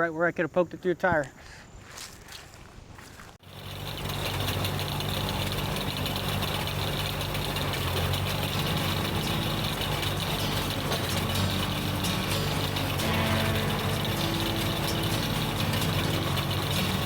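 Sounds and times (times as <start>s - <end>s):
tractor engine running: 3.4s - 17.0s.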